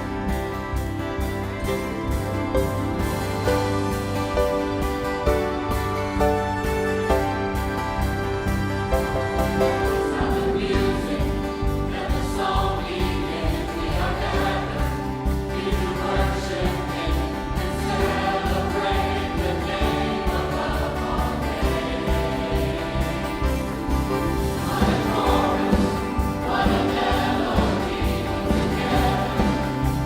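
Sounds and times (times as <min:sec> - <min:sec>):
orchestral accompaniment: 0:00.0 - 0:30.0
choir singing: 0:02.0 - 0:30.0
steady beat: 0:10.0 - 0:30.0.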